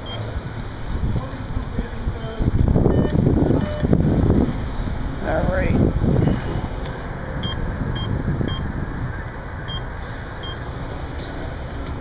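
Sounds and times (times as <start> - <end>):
keypad beeps: 0.0 - 0.2, 2.9 - 3.9, 7.4 - 8.7, 9.7 - 10.6.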